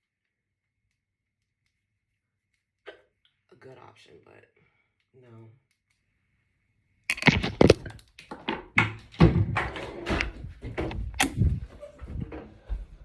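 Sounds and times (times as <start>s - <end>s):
irregular knocks and thuds: 7.2s - 13.0s.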